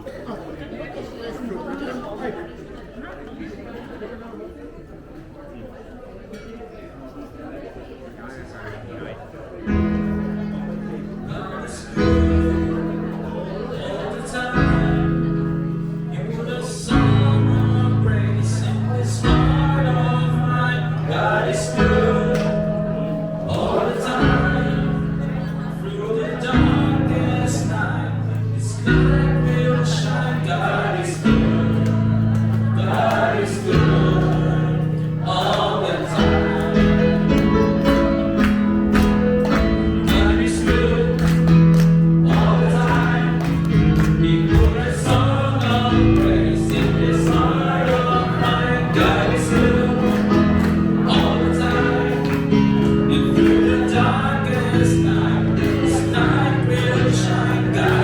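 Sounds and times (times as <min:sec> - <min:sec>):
voices singing worship song: 0:10.8 - 0:58.0
instrumental accompaniment with beat: 0:35.5 - 0:58.0.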